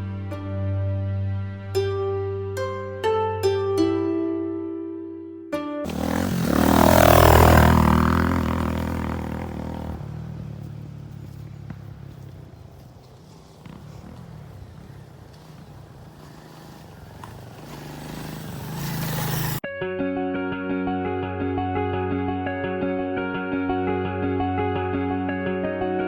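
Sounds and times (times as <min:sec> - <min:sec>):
vehicle engine passing by: 0:05.9 - 0:19.6.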